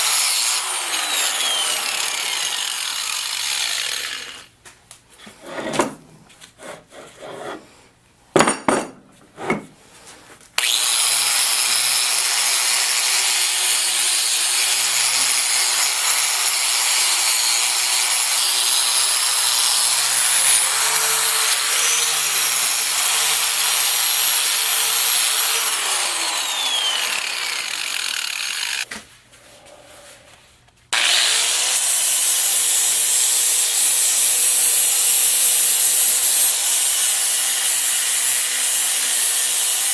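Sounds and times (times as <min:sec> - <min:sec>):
power tool scouring metal: 0:00.0 - 0:04.5, 0:10.6 - 0:28.9, 0:31.0 - 0:39.9.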